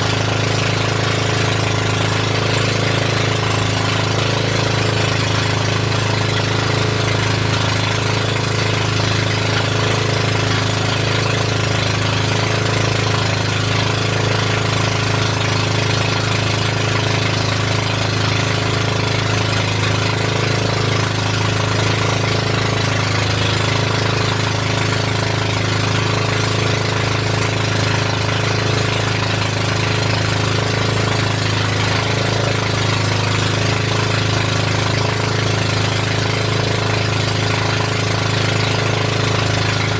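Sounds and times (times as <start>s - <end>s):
boat engine droning: 0.0s - 39.9s.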